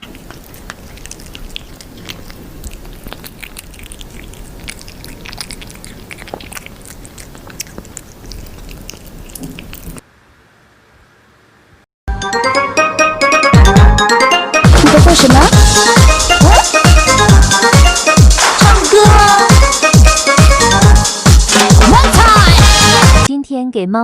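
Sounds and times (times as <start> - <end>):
pet chewing crunchy food: 0.0 - 10.0.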